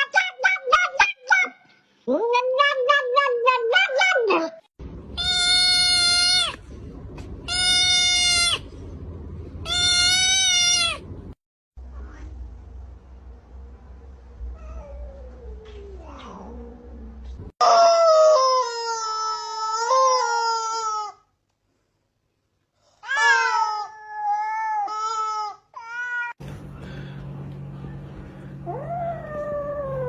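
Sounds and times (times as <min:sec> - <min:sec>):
cats yowling and meowing: 0:28.7 - 0:30.0.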